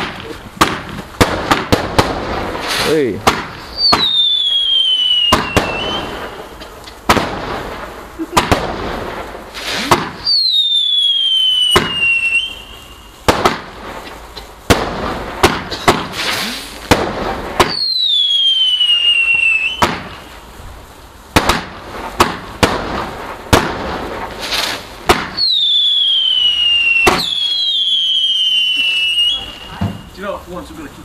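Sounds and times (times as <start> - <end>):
firework bangs: 0.0 - 31.0
firework crackling hiss: 0.0 - 31.0
firework whistles falling in pitch: 3.6 - 6.6, 9.6 - 13.3, 17.6 - 20.4, 25.3 - 30.2.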